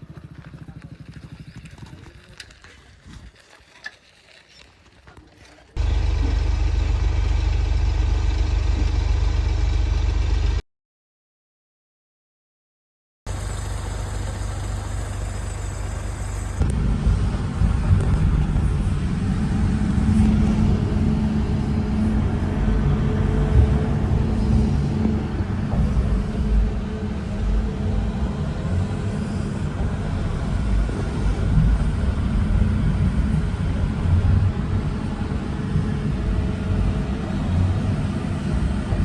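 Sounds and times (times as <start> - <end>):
diesel excavator engine running: 5.8 - 10.6, 13.3 - 39.0.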